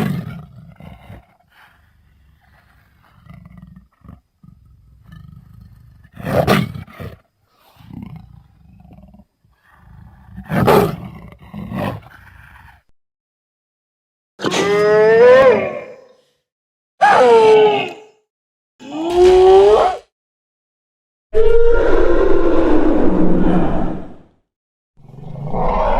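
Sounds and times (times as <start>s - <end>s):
dinosaur roars: 14.4s - 16.2s, 21.4s - 24.3s, 25.0s - 25.9s.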